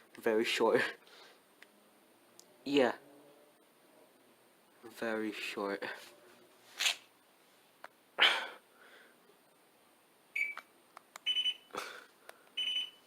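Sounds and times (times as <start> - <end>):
high electronic beeps: 10.4 - 10.6, 12.6 - 13.0.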